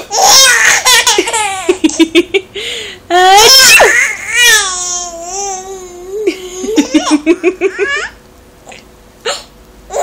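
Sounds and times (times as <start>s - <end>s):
baby giggling: 0.0s - 2.1s, 6.1s - 8.2s.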